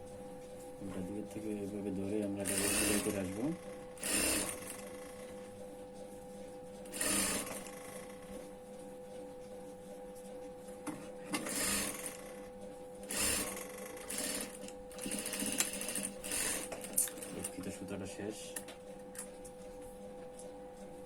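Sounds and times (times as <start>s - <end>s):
sewing machine stitching: 2.4s - 5.2s, 6.9s - 8.3s, 11.3s - 12.4s, 13.1s - 17.7s.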